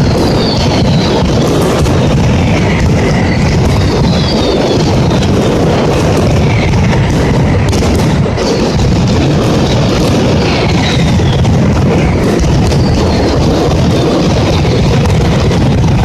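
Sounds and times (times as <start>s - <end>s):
falling whistles: 0.0s - 1.6s, 3.0s - 5.2s, 12.4s - 13.4s
firecracker bangs: 0.0s - 16.0s.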